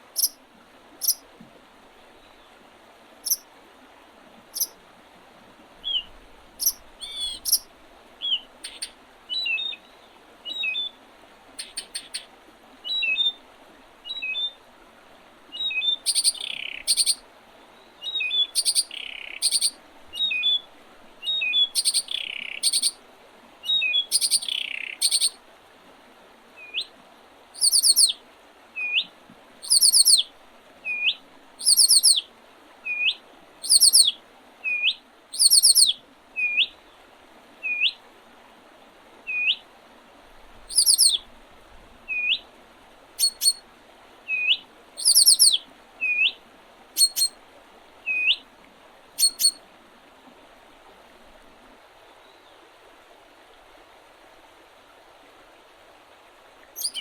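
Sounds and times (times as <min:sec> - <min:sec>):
high thin rapid bird trill: 0:00.2 - 0:00.4, 0:06.6 - 0:07.6, 0:11.6 - 0:12.3, 0:16.1 - 0:17.2, 0:18.6 - 0:19.7, 0:21.8 - 0:23.0, 0:24.1 - 0:25.4, 0:27.6 - 0:28.1, 0:29.6 - 0:30.2, 0:31.6 - 0:32.2, 0:33.6 - 0:34.1, 0:35.4 - 0:35.9, 0:40.7 - 0:41.2, 0:43.2 - 0:43.6, 0:45.0 - 0:45.6, 0:47.0 - 0:47.3, 0:49.2 - 0:49.6, 0:56.8 - 0:57.0
songbirds singing: 0:00.2 - 0:00.4, 0:01.0 - 0:01.2, 0:03.2 - 0:03.4, 0:04.6 - 0:04.8, 0:05.8 - 0:11.0, 0:11.6 - 0:13.4, 0:14.0 - 0:14.6, 0:15.5 - 0:23.0, 0:23.6 - 0:25.4, 0:26.6 - 0:26.9, 0:27.6 - 0:28.2, 0:28.8 - 0:32.2, 0:32.8 - 0:37.0, 0:37.6 - 0:38.0, 0:39.2 - 0:39.6, 0:40.6 - 0:41.2, 0:42.0 - 0:42.5, 0:43.2 - 0:43.6, 0:44.3 - 0:46.4, 0:47.0 - 0:47.4, 0:48.0 - 0:48.4, 0:49.2 - 0:49.6, 0:56.8 - 0:57.0.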